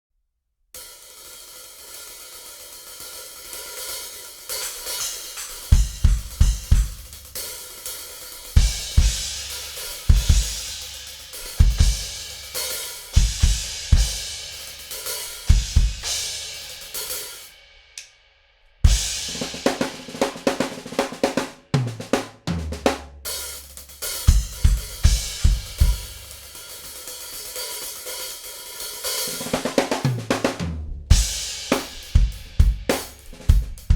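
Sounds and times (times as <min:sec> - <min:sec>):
drum beat with bass drum and snare: 0:00.8 - 0:17.7, 0:18.8 - 0:33.9
cymbals and hi-hat: 0:00.8 - 0:22.1, 0:23.2 - 0:33.9.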